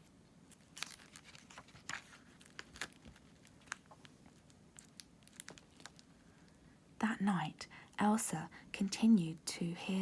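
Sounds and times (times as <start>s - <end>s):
paper crinkling: 0.4s - 6.6s.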